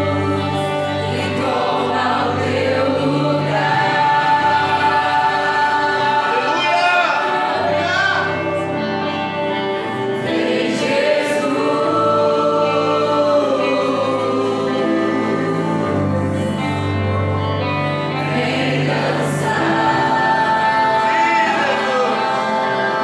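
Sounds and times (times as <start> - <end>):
voices singing worship music: 0.0 - 23.0.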